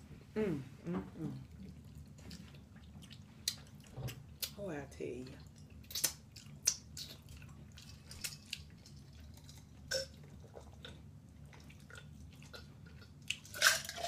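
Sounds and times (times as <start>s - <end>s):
faint low hum: 0.0s - 14.0s
wet mouth smacks while eating: 5.9s - 7.2s.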